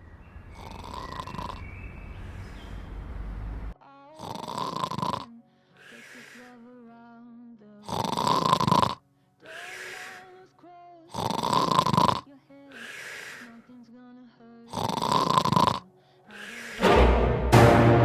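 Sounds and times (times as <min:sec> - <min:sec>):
person snoring loudly: 0:00.6 - 0:01.6, 0:04.2 - 0:05.3, 0:07.9 - 0:10.3, 0:11.1 - 0:12.2, 0:14.7 - 0:16.8
light melody: 0:16.8 - 0:18.0.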